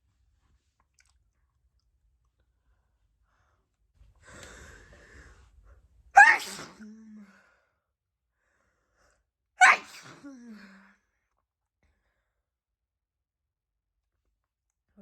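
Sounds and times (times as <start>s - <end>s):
woman sneezing: 6.2s - 6.9s, 9.6s - 10.6s.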